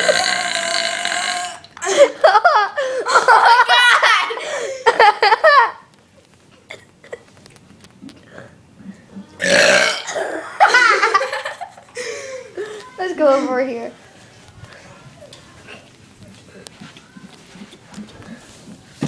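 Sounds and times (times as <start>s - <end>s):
loud warbling burps: 0.0s - 1.8s, 9.4s - 10.5s
person giggling: 1.8s - 5.9s.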